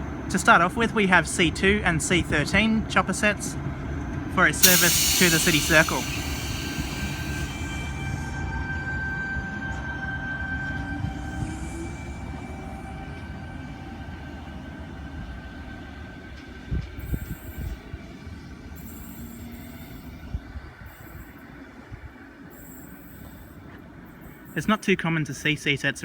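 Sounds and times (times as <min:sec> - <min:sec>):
wheel and rail rumble: 0:00.0 - 0:25.6
train knocks: 0:04.6 - 0:08.4
electric train motor whine: 0:04.6 - 0:15.3.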